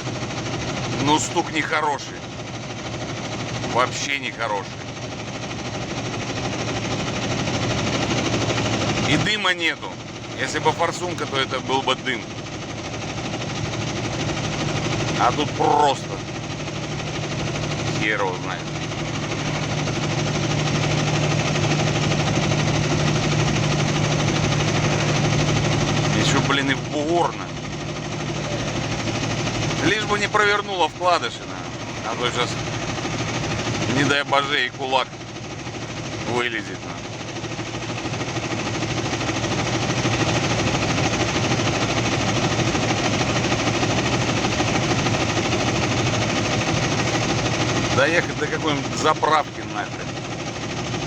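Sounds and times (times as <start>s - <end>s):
truck engine knocking: 0.0s - 51.0s.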